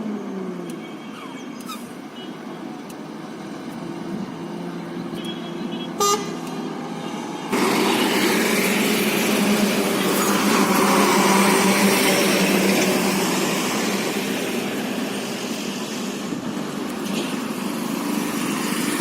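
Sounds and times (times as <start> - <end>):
road traffic noise: 0.0 - 19.0
vehicle horn toot: 5.1 - 6.4.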